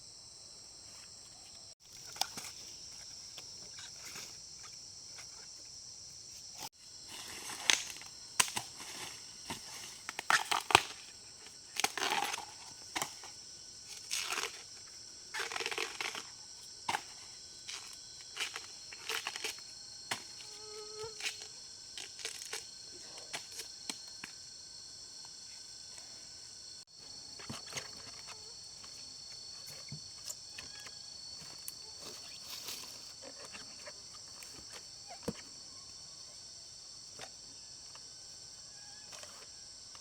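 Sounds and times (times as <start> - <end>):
insects droning: 0.0 - 40.0
plant stems snapping and rustling: 7.6 - 8.7.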